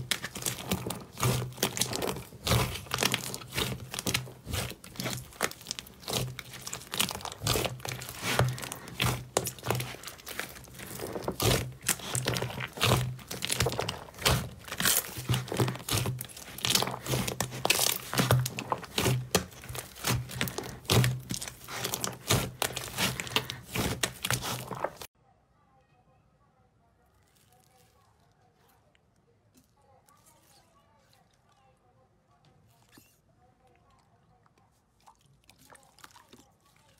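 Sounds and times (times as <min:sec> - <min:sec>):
slime crackling and popping: 0:00.0 - 0:25.1.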